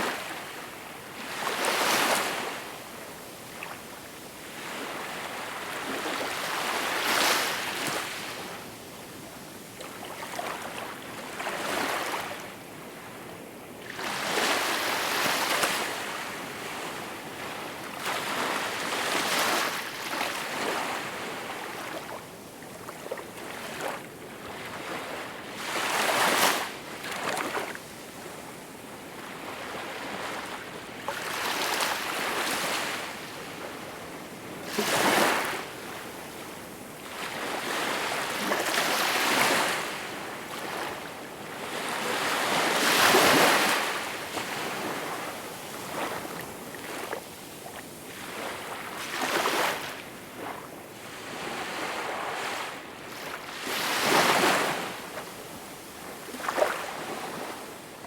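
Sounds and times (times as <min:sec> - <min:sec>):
small waves breaking on shore: 0:29.2 - 0:58.0.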